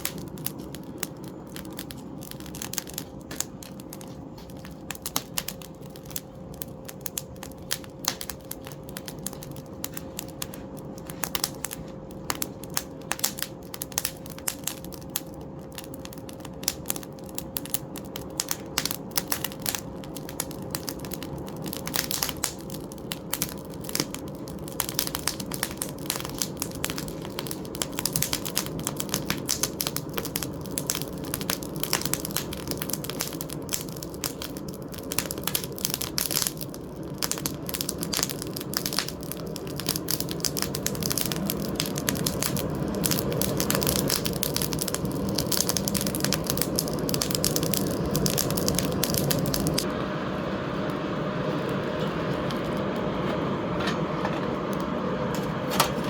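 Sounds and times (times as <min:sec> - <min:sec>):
forge fire crackling: 0:00.0 - 0:56.0
blower roar: 0:46.1 - 0:56.0.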